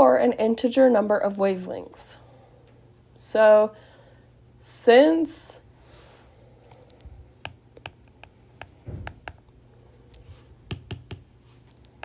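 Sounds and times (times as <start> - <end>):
soft low thump: 8.8 - 9.3.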